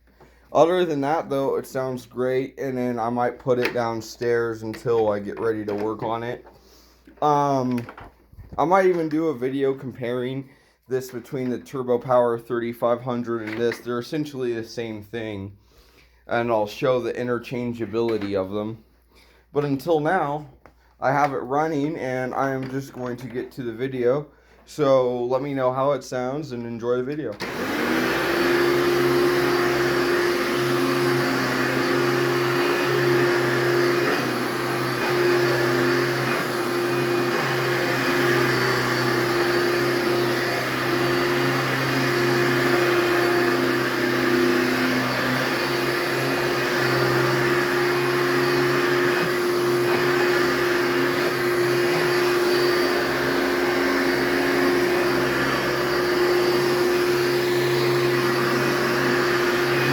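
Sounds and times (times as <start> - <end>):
vacuum cleaner running: 0.1 - 6.4, 7.2 - 9.8, 27.3 - 59.9.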